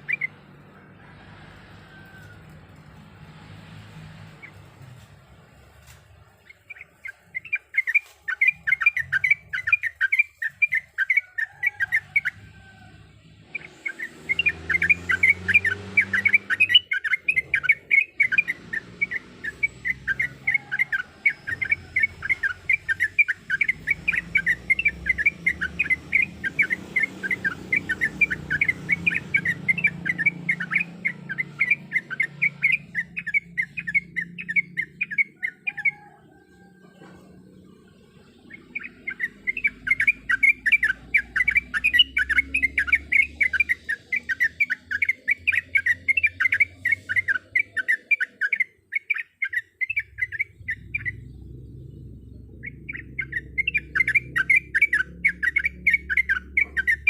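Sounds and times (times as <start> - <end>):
bird chattering song: 0.0 - 0.9, 5.6 - 12.8, 13.4 - 57.0
low rumble: 50.1 - 54.4.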